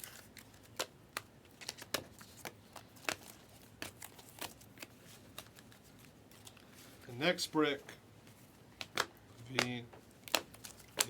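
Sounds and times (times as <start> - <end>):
cards being flicked through: 8.8 - 11.0.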